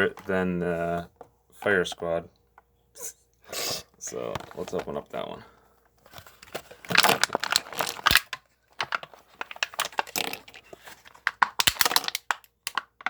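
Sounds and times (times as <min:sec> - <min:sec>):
packaging tearing and crinkling: 0:06.6 - 0:13.0.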